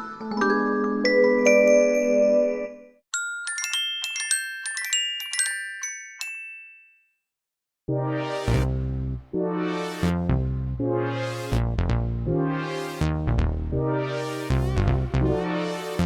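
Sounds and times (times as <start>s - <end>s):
high bell-like ringtone melody: 0.0s - 7.3s.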